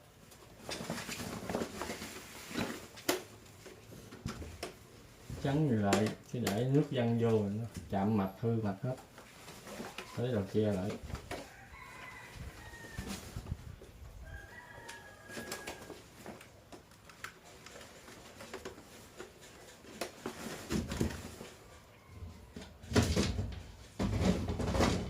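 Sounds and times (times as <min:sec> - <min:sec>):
hands clicking and knocking: 0:05.8 - 0:07.2.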